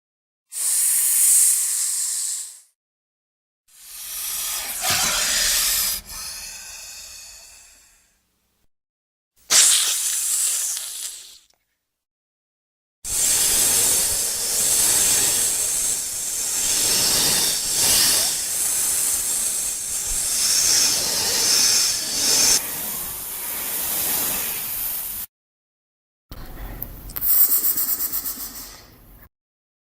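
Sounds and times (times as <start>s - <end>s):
snake hissing: 0.5s - 2.7s, 3.7s - 8.1s, 9.5s - 11.5s, 13.1s - 25.3s, 27.2s - 29.0s.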